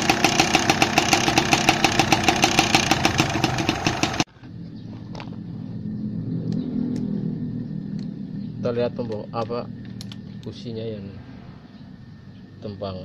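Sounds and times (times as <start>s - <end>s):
motorcycle engine ticking: 0.0s - 4.3s.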